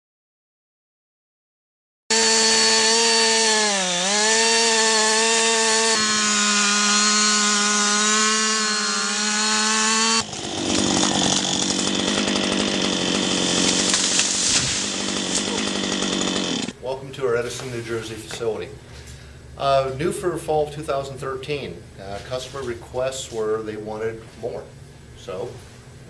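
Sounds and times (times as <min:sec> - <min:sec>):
chainsaw running: 0:02.1 - 0:16.8.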